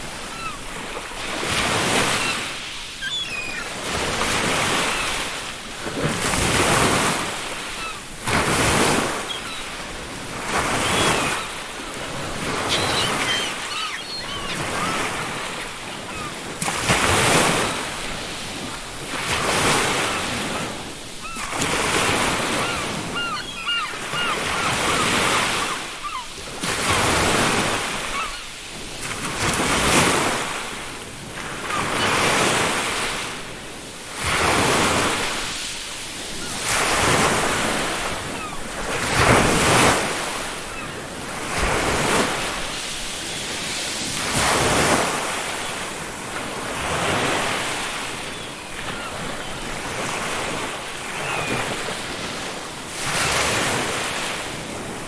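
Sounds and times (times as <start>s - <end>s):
ocean waves breaking on beach: 0.0s - 55.0s
faint seagull calls: 0.1s - 5.3s, 7.6s - 16.5s, 19.8s - 26.4s, 27.2s - 28.5s, 47.1s - 52.1s.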